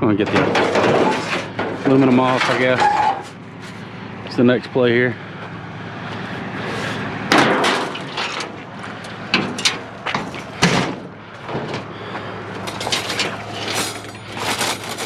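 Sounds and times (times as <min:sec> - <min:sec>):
aluminum scrap clanking and banging: 0:00.0 - 0:03.8, 0:07.3 - 0:11.9, 0:12.6 - 0:15.0.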